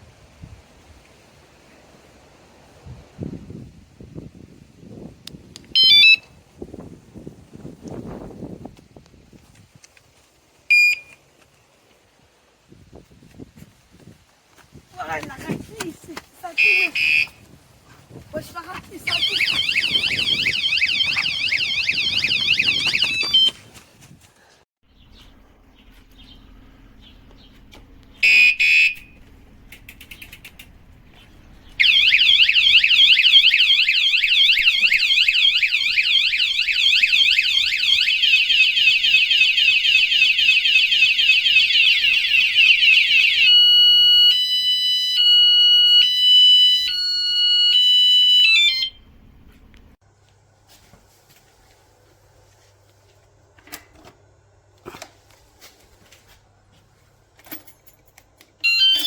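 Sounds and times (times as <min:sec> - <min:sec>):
short alarm beeps: 0:05.8 - 0:06.2, 0:10.7 - 0:11.2, 0:16.6 - 0:17.4, 0:19.1 - 0:23.6, 0:28.2 - 0:29.2, 0:58.6 - 0:59.0
two-tone alarm sequence: 0:05.8 - 0:06.3, 0:16.6 - 0:17.4, 0:19.1 - 0:23.6, 0:28.2 - 0:29.2, 0:31.8 - 0:49.2, 0:58.6 - 0:59.0
warbling alarm siren: 0:16.7 - 0:17.4, 0:19.1 - 0:23.6, 0:28.2 - 0:29.2, 0:31.7 - 0:49.5, 0:58.6 - 0:59.0.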